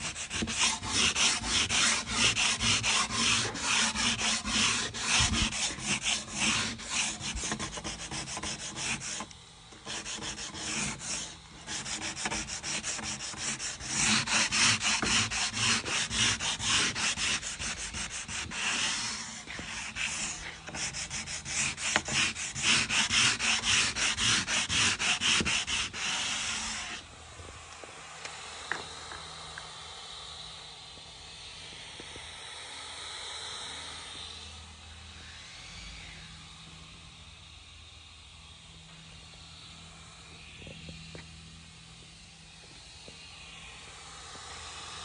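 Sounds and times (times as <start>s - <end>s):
sandpaper rubbing on wood: 0.0s - 27.0s.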